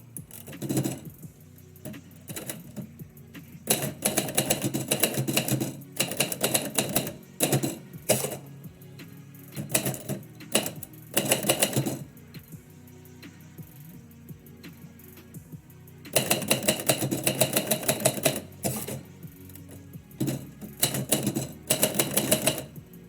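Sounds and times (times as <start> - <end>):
quiet background music: 0.0 - 23.0
typewriter typing: 0.2 - 1.2, 1.8 - 3.0, 3.6 - 8.6, 9.5 - 12.2, 16.1 - 22.8.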